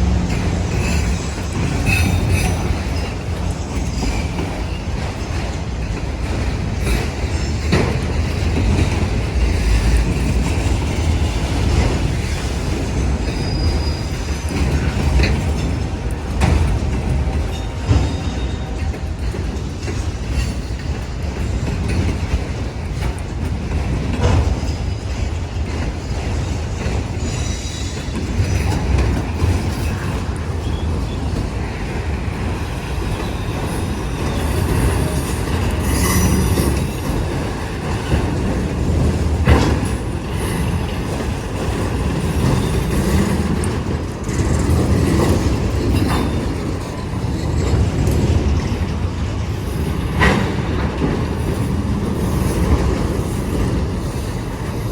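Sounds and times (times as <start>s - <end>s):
train wheels rumbling on track: 0.0s - 54.9s
faint high squeals: 13.2s - 14.4s.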